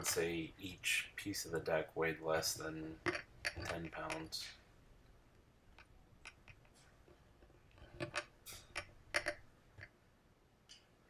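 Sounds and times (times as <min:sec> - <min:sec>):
faint clicks and light taps: 0:10.6 - 0:10.9.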